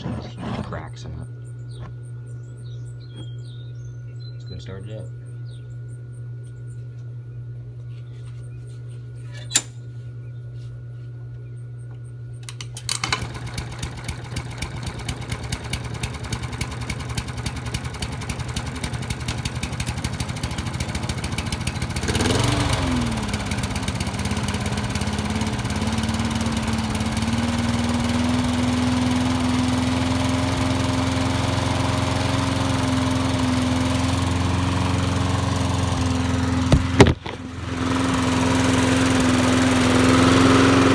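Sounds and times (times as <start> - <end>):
lawn mower engine running: 0.0 - 1.2, 12.4 - 40.9
faint hum: 0.0 - 12.8.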